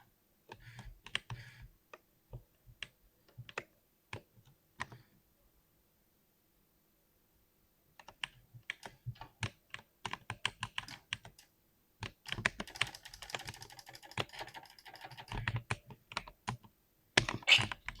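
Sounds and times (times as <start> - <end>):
keyboard typing: 8.0 - 18.0.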